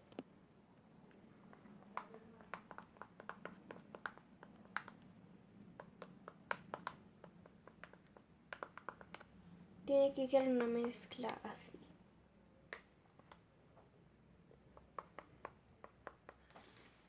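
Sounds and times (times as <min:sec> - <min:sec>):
utensil stirring slime in bowl: 0:00.8 - 0:09.4.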